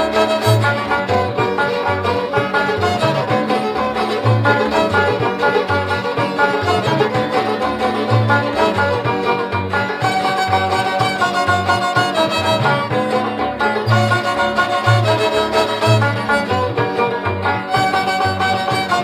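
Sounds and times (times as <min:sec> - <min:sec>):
fiddle and strings: 0:00.0 - 0:19.0.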